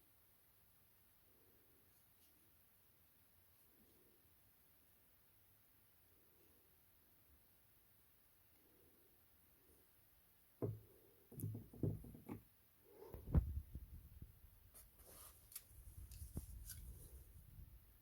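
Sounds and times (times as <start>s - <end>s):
boxes knocking and bumping: 11.4s - 12.5s.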